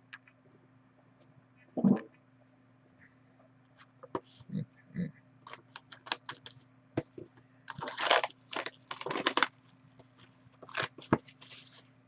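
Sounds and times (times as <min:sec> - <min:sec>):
wrapper tearing: 0:05.5 - 0:06.5, 0:07.7 - 0:11.8
packaging clicks and crinkles: 0:05.5 - 0:06.6, 0:07.7 - 0:11.8.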